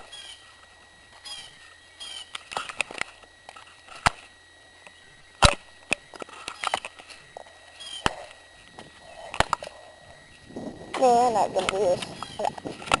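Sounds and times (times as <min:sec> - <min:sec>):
bird chirping: 0:01.2 - 0:02.4, 0:07.7 - 0:08.2.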